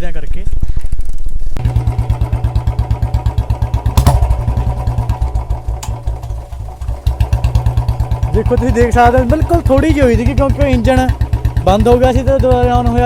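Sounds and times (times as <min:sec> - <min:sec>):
engine backfire crack: 0:01.6 - 0:11.8
motorcycle engine idling: 0:01.6 - 0:13.0.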